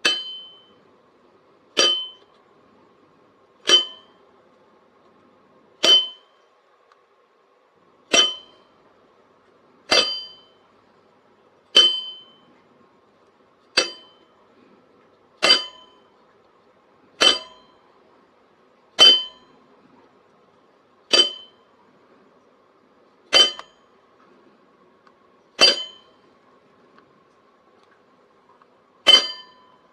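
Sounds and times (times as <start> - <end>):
faint steady hum: 0.0 - 29.9
sharp metallic clink: 25.6 - 26.2, 29.1 - 29.8.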